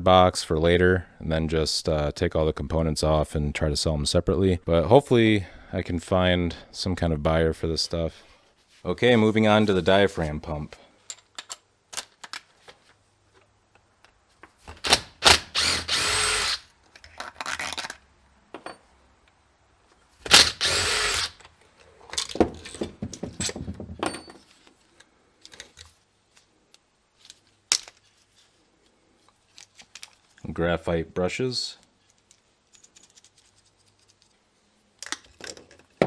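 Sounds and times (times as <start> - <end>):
clicks and rattles of parts: 11.0 - 12.9, 14.6 - 18.0, 20.2 - 24.6, 25.4 - 26.0, 27.2 - 28.1, 29.5 - 30.4, 32.1 - 34.3, 35.0 - 36.0
power drill spinning: 14.8 - 16.7, 20.3 - 21.4.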